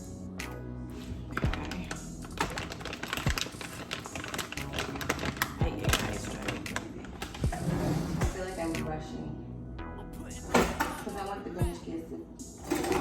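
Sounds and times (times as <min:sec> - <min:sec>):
kitchen clicking and clatter: 0:01.0 - 0:08.5, 0:10.5 - 0:11.2, 0:12.6 - 0:13.0.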